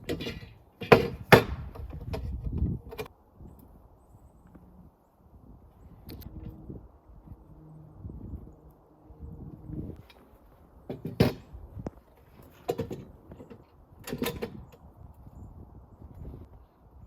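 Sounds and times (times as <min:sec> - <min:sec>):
sharp knocks and clatters: 0:00.0 - 0:03.1, 0:10.8 - 0:11.5, 0:12.4 - 0:14.7.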